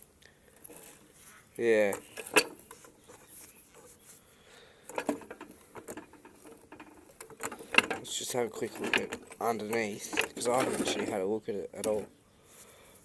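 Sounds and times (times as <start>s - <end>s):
metal parts clicking and scraping: 0.5s - 1.1s, 1.7s - 4.0s, 4.8s - 12.1s.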